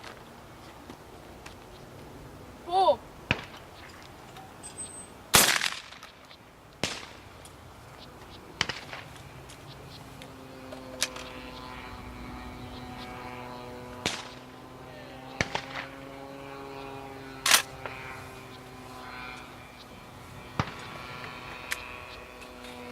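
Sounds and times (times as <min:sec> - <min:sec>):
steady humming tone: 0:00.0 - 0:22.9
shotgun shot echoing: 0:05.3 - 0:06.1, 0:06.8 - 0:07.2, 0:20.6 - 0:20.9.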